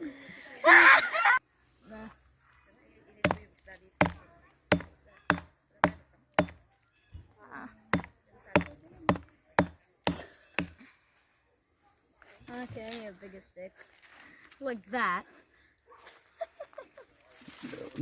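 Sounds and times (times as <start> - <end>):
chopping into wooden stick: 3.2 - 6.6, 7.9 - 10.8.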